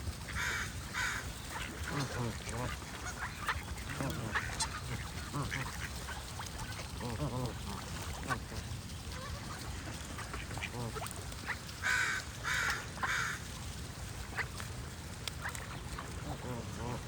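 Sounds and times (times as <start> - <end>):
waterfowl calling: 0.3 - 13.4.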